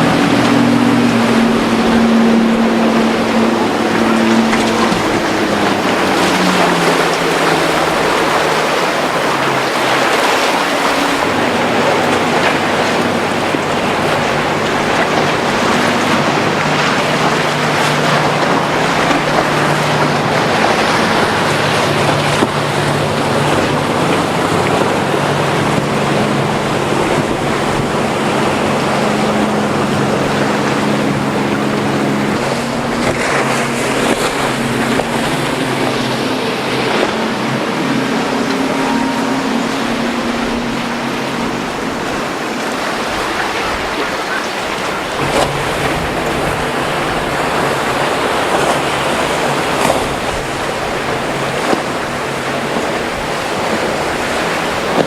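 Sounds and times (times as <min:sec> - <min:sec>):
outboard engines running: 0:00.0 - 0:55.0
waves washing: 0:00.0 - 0:55.0
wind: 0:00.0 - 0:55.0.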